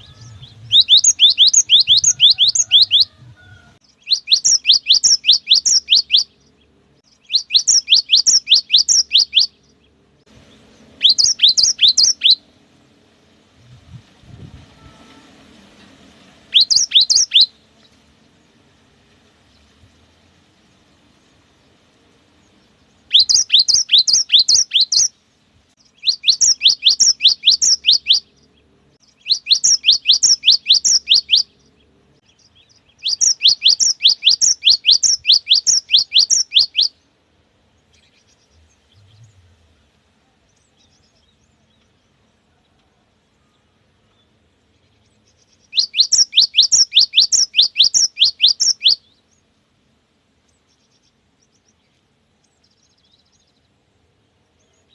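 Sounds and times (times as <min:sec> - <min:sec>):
bird singing high slurred notes: 0:00.0 - 0:12.6, 0:13.6 - 0:17.7, 0:22.6 - 0:25.2, 0:25.8 - 0:37.1, 0:37.9 - 0:42.0, 0:43.4 - 0:49.4.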